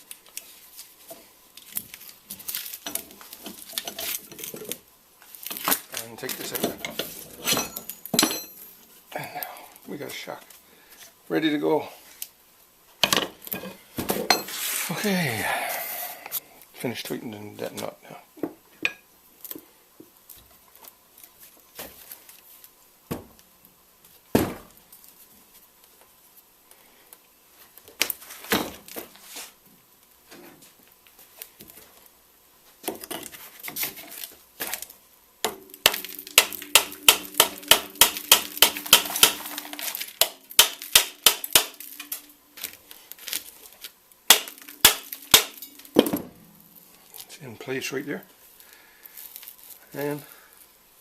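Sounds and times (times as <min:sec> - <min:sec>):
tools clinking on metal: 0:06.5 - 0:08.8, 0:35.5 - 0:42.3, 0:44.3 - 0:46.2
steady low hum: 0:34.0 - 0:49.2.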